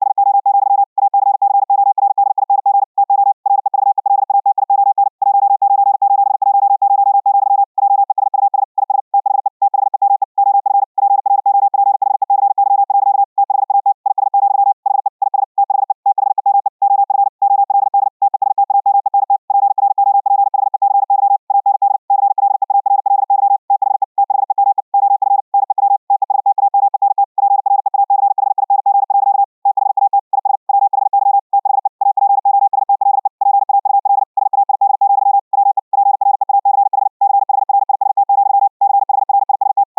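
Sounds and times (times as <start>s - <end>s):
fast morse code tone: 0.0s - 39.9s.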